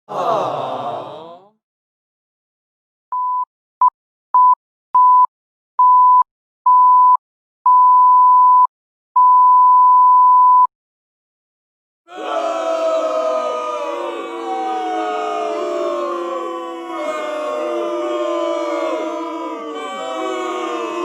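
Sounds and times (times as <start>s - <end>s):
electronic censor beep: 4.4s - 10.7s.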